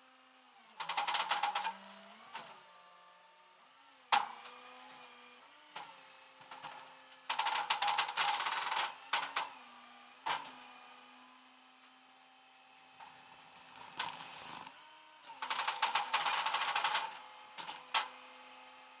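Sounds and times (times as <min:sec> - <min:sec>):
loud buzzing rattle: 0:15.4 - 0:17.8.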